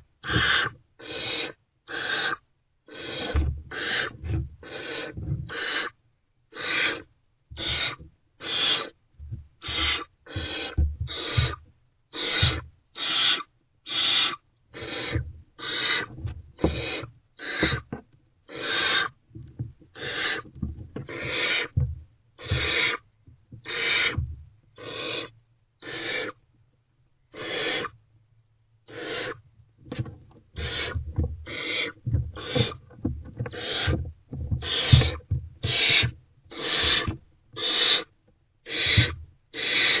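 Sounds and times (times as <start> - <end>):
owlets screeching: 0.2 - 9.0, 9.6 - 16.1, 16.7 - 17.9, 18.5 - 19.2, 20.0 - 20.4, 21.1 - 21.8, 22.4 - 23.0, 23.6 - 24.2, 24.8 - 26.4, 27.3 - 27.9, 28.9 - 29.4, 30.6 - 32.8, 33.5 - 34.0, 34.6 - 38.1, 38.7 - 40.0.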